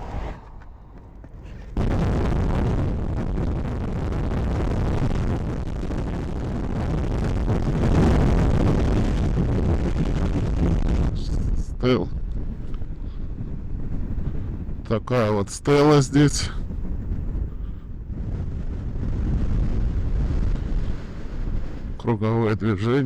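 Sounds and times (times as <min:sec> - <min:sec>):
wind and road noise: 0:00.0 - 0:22.6.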